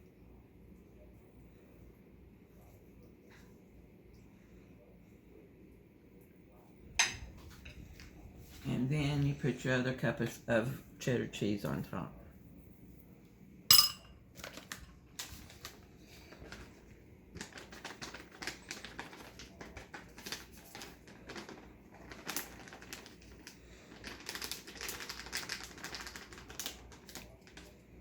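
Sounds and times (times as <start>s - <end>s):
plastic bag crinkling: 14.2s - 27.8s.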